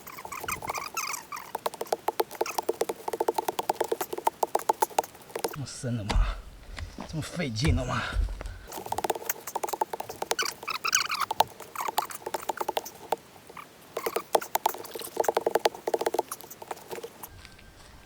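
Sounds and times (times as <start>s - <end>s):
grit and stones clicking: 0.0s - 17.3s.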